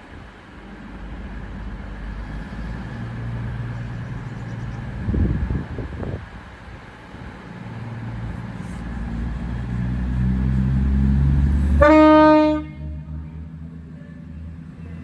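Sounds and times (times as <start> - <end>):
train rumbling: 0.0 - 15.0
train horn blast: 11.5 - 13.4.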